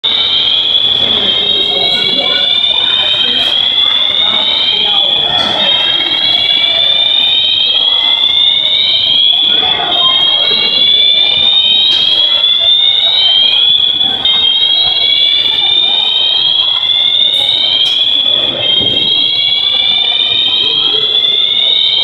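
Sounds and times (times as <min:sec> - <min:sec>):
fire alarm rising tone: 0:00.0 - 0:22.0.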